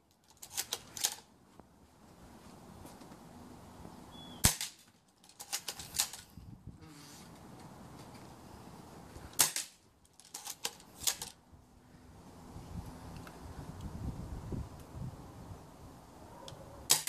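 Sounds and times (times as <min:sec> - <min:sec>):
airsoft rifle shot: 0:04.4 - 0:04.8, 0:09.4 - 0:09.8.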